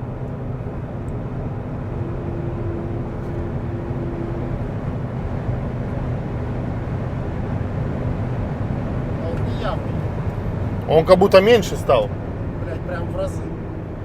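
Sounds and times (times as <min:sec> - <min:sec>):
road and wind rumble: 0:00.0 - 0:14.0
higher hum note: 0:01.4 - 0:05.8, 0:11.6 - 0:14.0.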